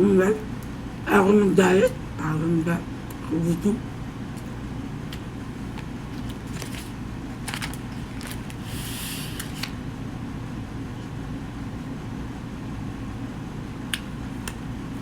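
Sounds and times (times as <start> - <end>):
low background hum: 0.0 - 15.0
crackling rustle: 5.7 - 8.7.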